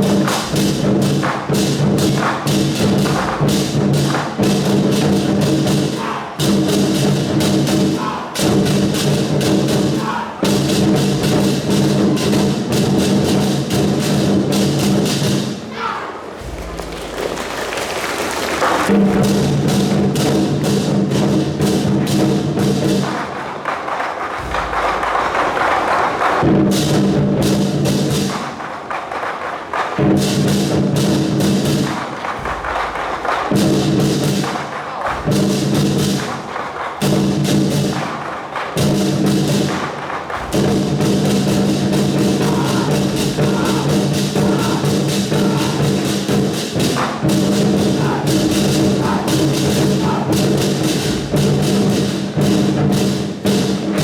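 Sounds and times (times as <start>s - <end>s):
procession music with drums: 0.0s - 54.0s.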